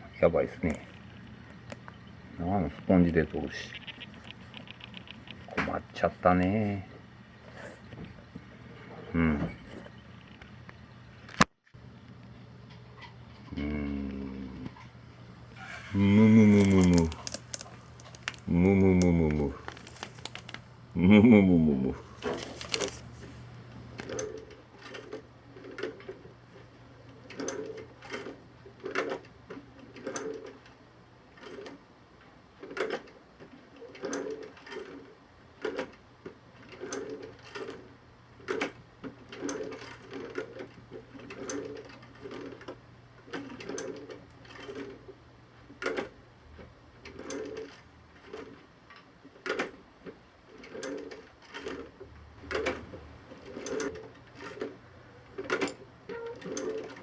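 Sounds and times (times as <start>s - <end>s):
faint low hum: 0.0s - 24.6s.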